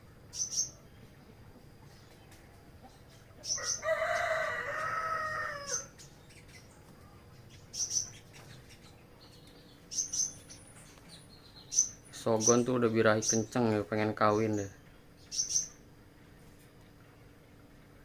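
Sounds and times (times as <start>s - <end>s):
songbirds chirping: 0.0s - 18.0s
rooster crowing: 3.4s - 6.0s.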